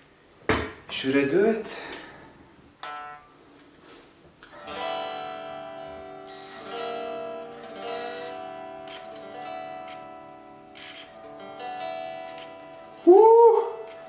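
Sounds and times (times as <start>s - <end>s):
electric guitar chords strummed: 2.8s - 3.3s, 4.5s - 14.0s.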